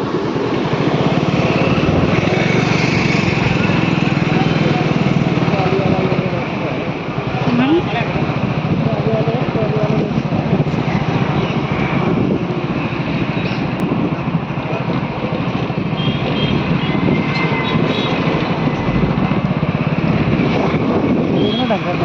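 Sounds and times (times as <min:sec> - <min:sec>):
vehicle engine running: 0:00.0 - 0:17.2.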